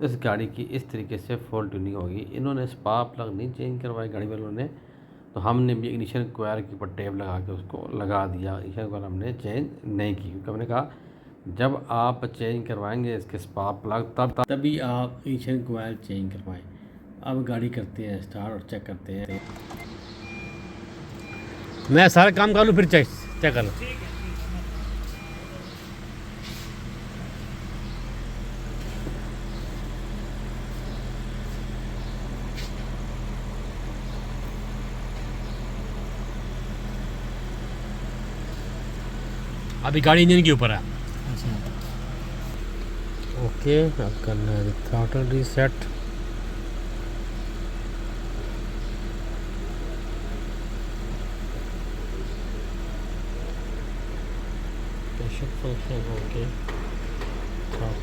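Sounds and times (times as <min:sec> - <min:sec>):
car engine idling: 0:19.3 - 0:58.0.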